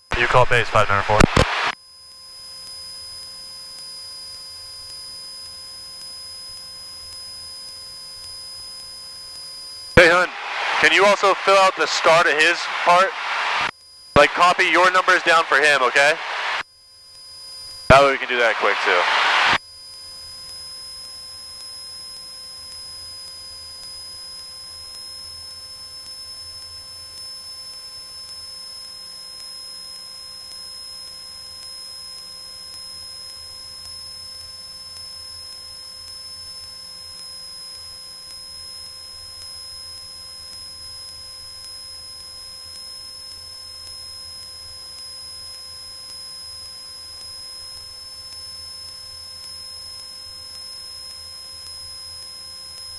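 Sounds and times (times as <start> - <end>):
electrical hum and hiss: 0.1 - 1.8, 10.0 - 16.6, 17.9 - 19.6
high-pitched whine: 10.0 - 16.6, 17.9 - 19.6.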